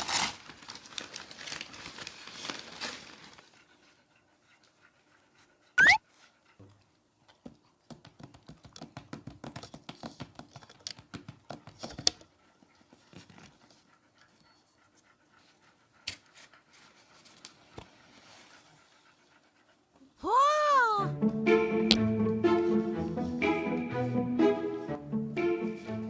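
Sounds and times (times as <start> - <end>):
dog panting: 3.1 - 7.9, 11.3 - 20.2.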